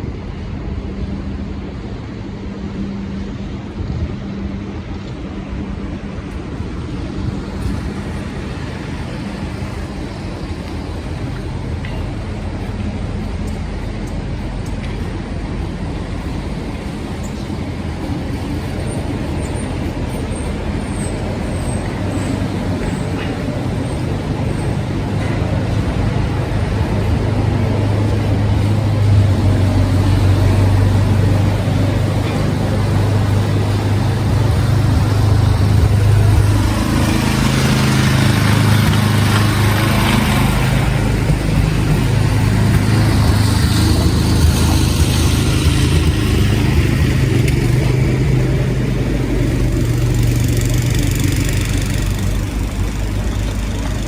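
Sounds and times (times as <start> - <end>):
heavy vehicle engine hum: 0.0 - 54.0
street traffic: 0.0 - 54.0.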